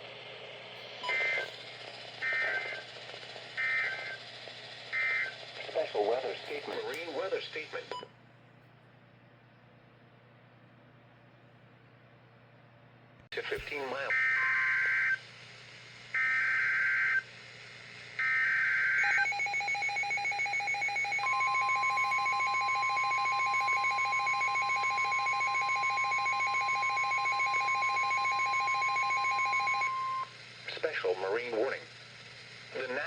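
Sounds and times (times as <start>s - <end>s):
steady high alarm tone: 18.2s - 30.3s.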